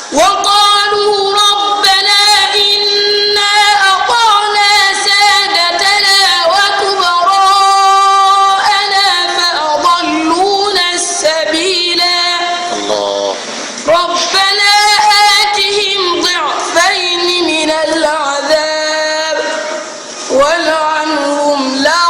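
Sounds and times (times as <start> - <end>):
child chanting melodically: 0.1 - 13.2, 13.9 - 22.0.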